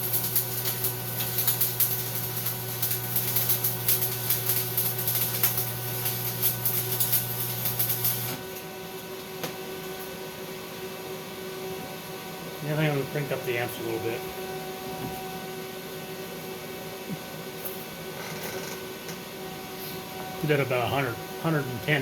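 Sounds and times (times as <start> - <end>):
welding arc crackling and sizzling: 0.0 - 10.2
low welder hum: 0.0 - 22.0.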